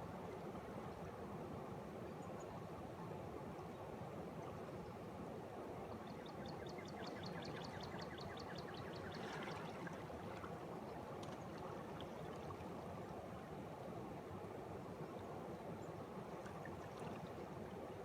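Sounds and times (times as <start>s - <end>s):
spring water bubbling and flowing: 6.9s - 15.4s, 16.0s - 18.0s.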